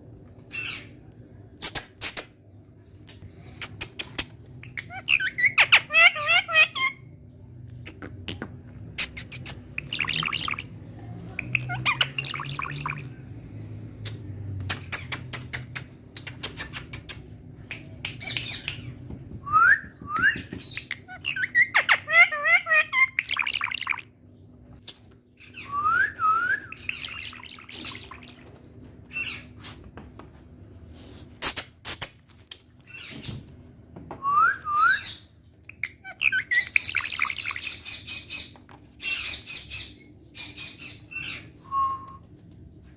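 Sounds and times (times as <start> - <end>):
parrot chattering and squawking: 3.6 - 7.1, 11.4 - 13.1, 20.7 - 24.1, 34.9 - 41.5.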